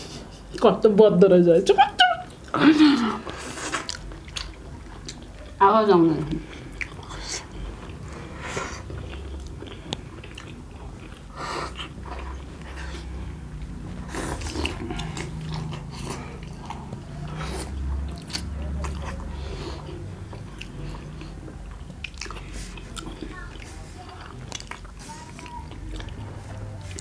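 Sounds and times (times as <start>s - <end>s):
chewing with wet mouth clicks: 3.6s - 5.6s, 6.3s - 8.0s, 8.8s - 13.0s, 13.6s - 27.0s.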